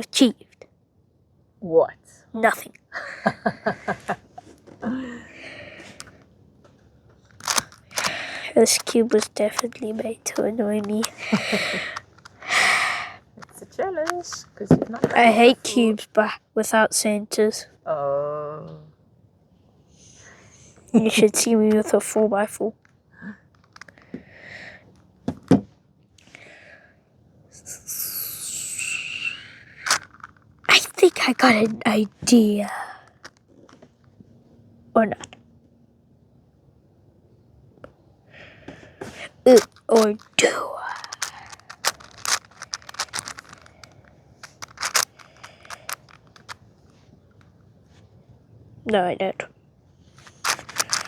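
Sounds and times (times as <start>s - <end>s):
soft plastic scraping: 5.8s - 6.2s, 7.2s - 14.7s, 23.6s - 24.1s, 29.8s - 32.5s, 39.2s - 47.0s, 50.2s - 51.0s
puzzle cube layers clicking: 7.4s - 12.8s, 29.8s - 31.7s, 39.5s - 46.6s, 50.2s - 51.0s.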